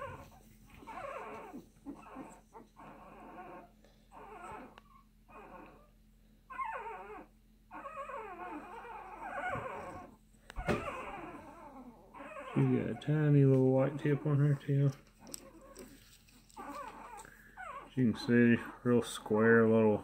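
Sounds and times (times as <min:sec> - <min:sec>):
puppy whimpering: 0:00.0 - 0:20.0.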